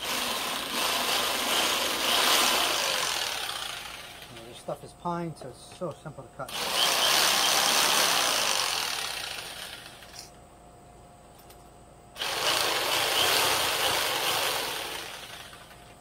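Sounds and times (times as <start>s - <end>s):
jigsaw cutting wood board: 0.0s - 4.3s, 6.5s - 10.2s, 12.2s - 15.8s.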